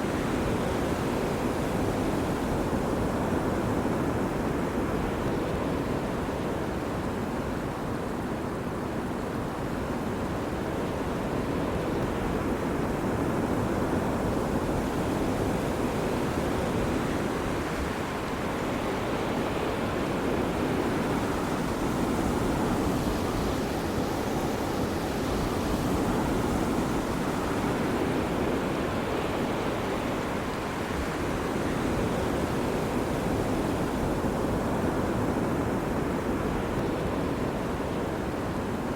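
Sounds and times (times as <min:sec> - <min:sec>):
ocean surf breaking on shore: 0:11.6 - 0:38.9.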